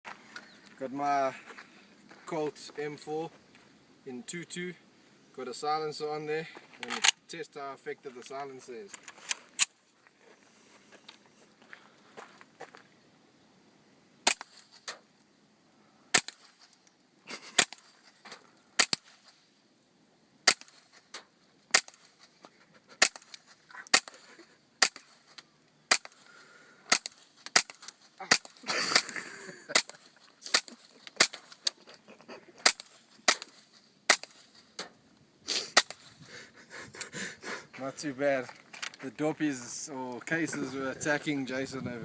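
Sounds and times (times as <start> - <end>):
suppressed rifle shots: 14.2 - 15.0.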